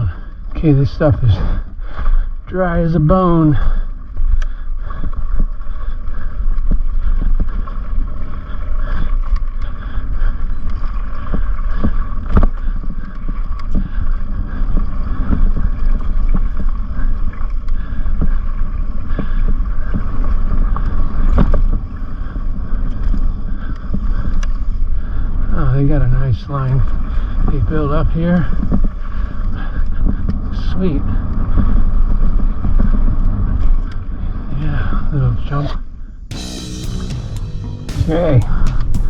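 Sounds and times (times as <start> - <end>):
wind buffeting camera: 0.0 - 36.3
tyres rumbling on dirt: 25.1 - 35.6
steady high hum: 30.0 - 39.0.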